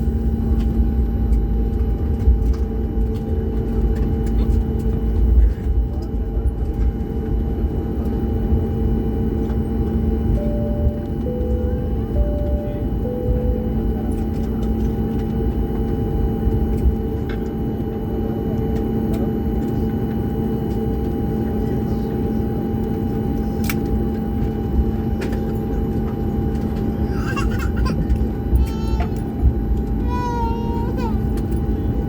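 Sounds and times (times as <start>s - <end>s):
engine and airflow rumble: 0.0s - 32.0s
humming tones: 7.8s - 21.5s.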